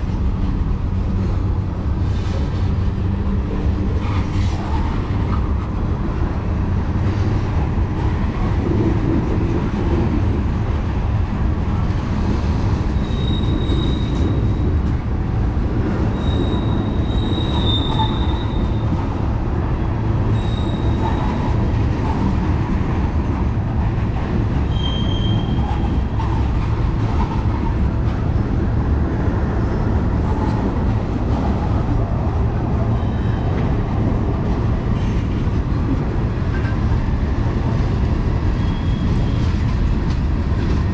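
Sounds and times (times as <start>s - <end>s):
freight train wheels rumbling: 0.0s - 40.9s
high-pitched wheel squeals: 12.9s - 14.6s, 16.1s - 18.9s, 20.3s - 21.4s, 24.6s - 26.0s, 38.6s - 39.6s.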